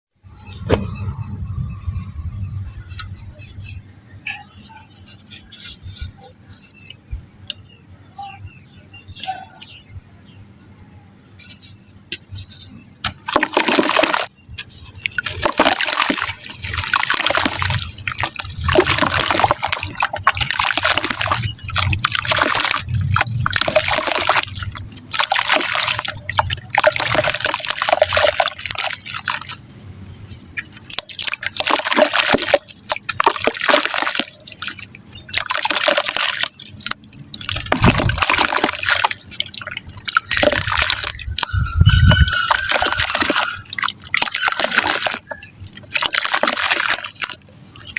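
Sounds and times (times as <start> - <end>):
wet mud splashing into water: 13.0 - 29.6, 30.6 - 47.9.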